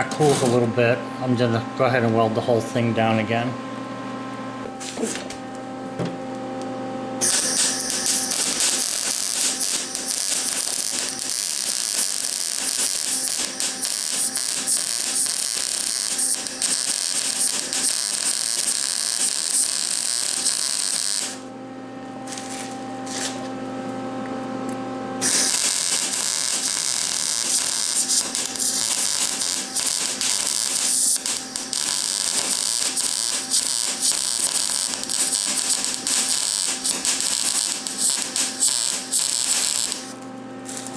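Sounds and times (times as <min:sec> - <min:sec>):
electrical hum: 0:00.0 - 0:40.9
welding arc crackling: 0:07.2 - 0:21.5, 0:25.2 - 0:40.9.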